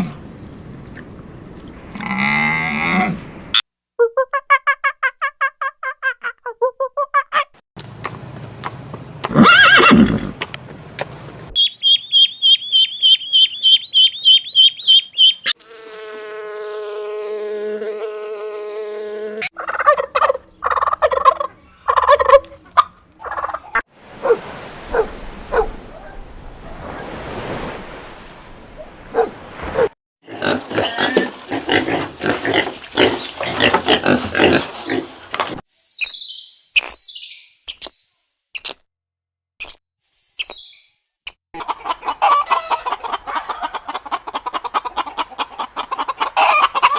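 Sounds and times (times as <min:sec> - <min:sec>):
fowl calls: 0:11.6 - 0:15.5, 0:41.6 - 0:46.9
rapid high-pitched chirping: 0:11.6 - 0:15.5.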